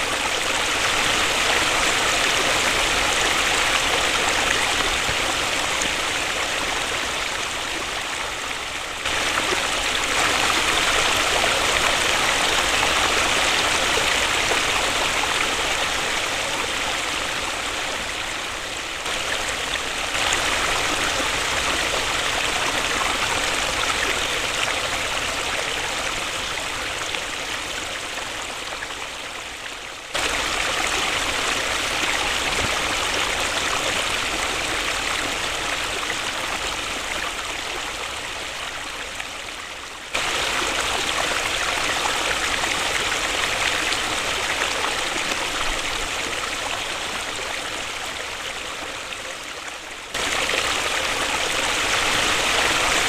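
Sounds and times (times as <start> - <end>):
waterfall rushing: 0.0 - 28.8, 30.2 - 39.4, 40.1 - 49.2, 49.9 - 53.0.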